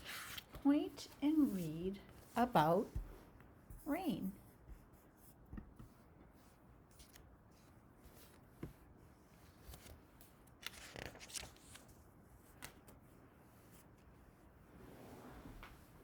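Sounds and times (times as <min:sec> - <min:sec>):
paper pages rustling: 0:00.0 - 0:02.3, 0:05.8 - 0:08.8, 0:09.4 - 0:13.0.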